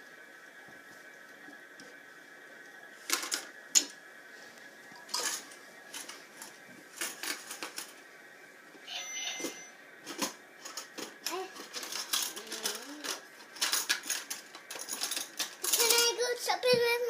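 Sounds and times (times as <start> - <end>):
faint steady hum: 0.0 - 17.0
plastic toy cash register clicking: 11.7 - 16.1.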